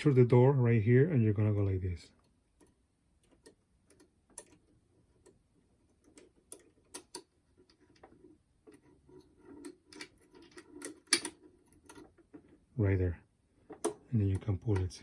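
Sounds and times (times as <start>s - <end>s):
wire hook clicking and scraping: 2.2s - 12.6s.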